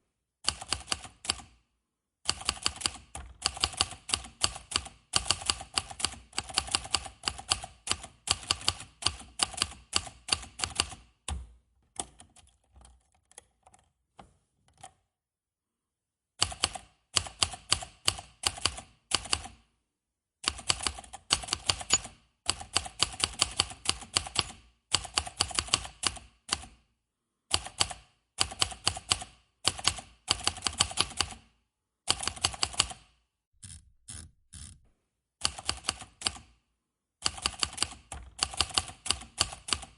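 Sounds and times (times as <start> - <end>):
typewriter keys clacking: 20.6 - 26.1, 37.3 - 39.9.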